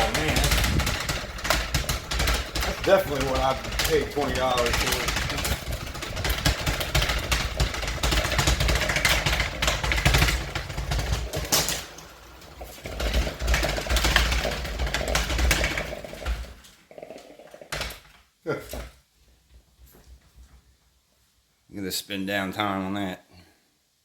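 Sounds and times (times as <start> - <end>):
unbalanced fan clattering and knocking: 0.0 - 16.8.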